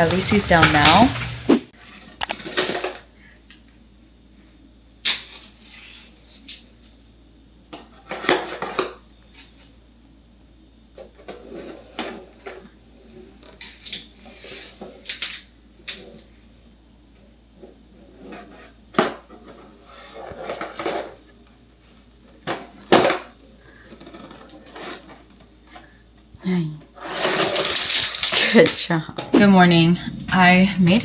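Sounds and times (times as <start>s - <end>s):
dishes and cutlery clinking: 0.0s - 1.5s.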